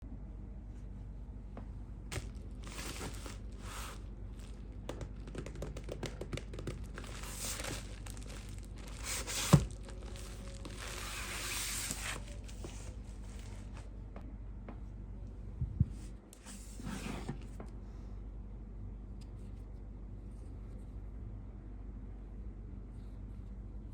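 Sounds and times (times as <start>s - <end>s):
packaging crinkling and tearing: 2.1s - 13.6s.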